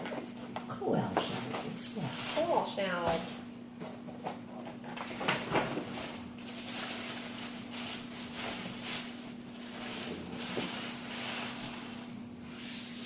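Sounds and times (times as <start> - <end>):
low electrical hum: 0.0 - 13.0
wrapping paper rustling and tearing: 5.1 - 12.2.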